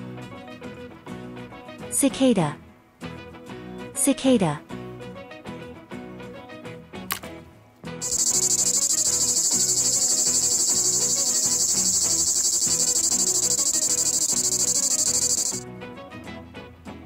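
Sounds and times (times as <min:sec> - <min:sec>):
cicada buzzing: 0:08.0 - 0:15.6.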